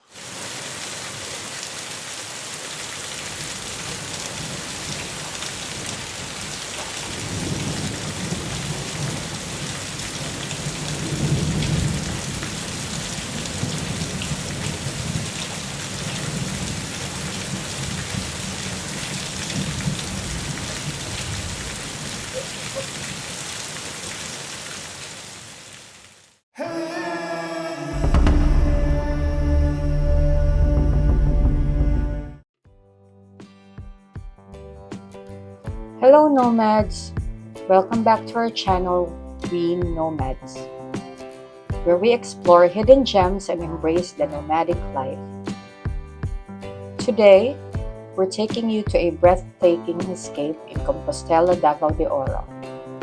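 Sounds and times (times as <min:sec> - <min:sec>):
steady rain: 0:00.0 - 0:26.4
rolling thunder: 0:07.1 - 0:15.4, 0:27.9 - 0:32.4.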